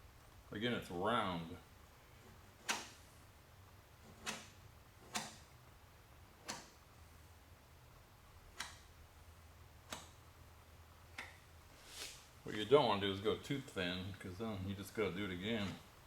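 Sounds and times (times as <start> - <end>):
faint room hum: 0.0 - 16.0
sharp clicks: 8.5 - 8.9, 9.9 - 10.2.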